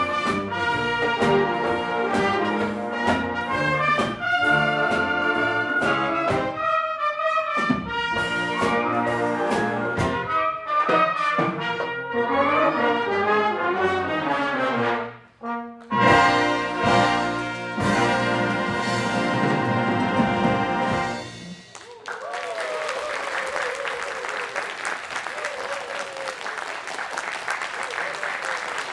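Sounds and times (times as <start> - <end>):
wind orchestra playing brass: 0.0 - 21.7
audience applause: 21.7 - 28.9.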